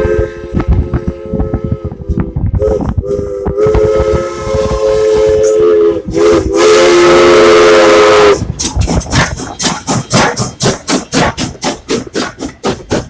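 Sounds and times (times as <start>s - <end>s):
steam locomotive chime whistle: 2.7s - 8.4s
steam hissing: 4.2s - 13.0s.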